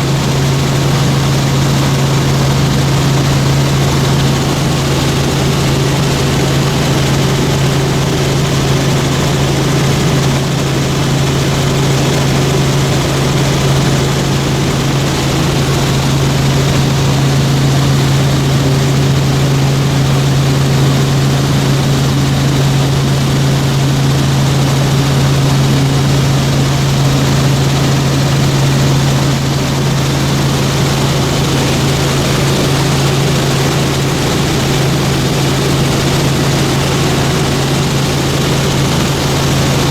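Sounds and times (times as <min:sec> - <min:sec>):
helicopter engine and rotor: 0:00.0 - 0:39.9
steady rushing noise: 0:29.5 - 0:39.9.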